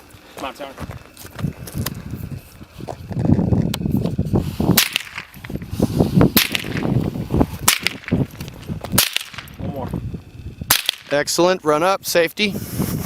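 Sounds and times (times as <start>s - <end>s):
loud gunshots: 4.7s - 5.4s, 6.3s - 7.0s, 7.6s - 8.2s, 8.9s - 9.6s, 10.7s - 11.3s.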